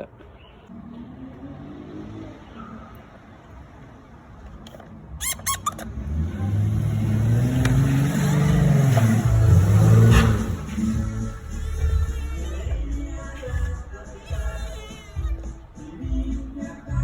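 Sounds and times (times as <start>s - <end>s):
quick squeaks: 5.1s - 6.0s, 9.9s - 16.0s
vehicle engine running: 5.9s - 17.0s.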